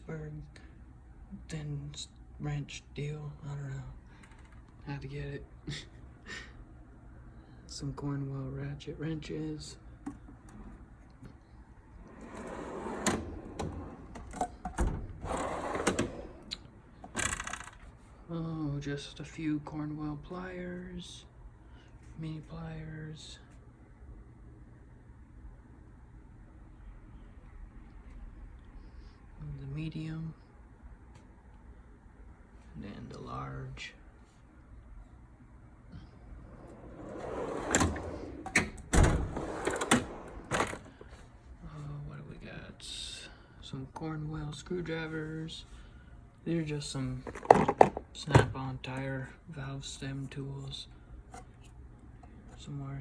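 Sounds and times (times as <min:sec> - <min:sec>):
tool box drawers sliding: 0:12.0 - 0:16.6, 0:36.2 - 0:41.2.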